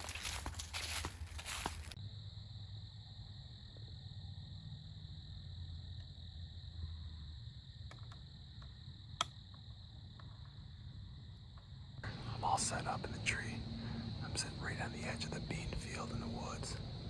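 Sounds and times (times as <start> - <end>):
crickets and insects chirring: 0.0 - 17.0
low wind rumble: 10.6 - 17.0.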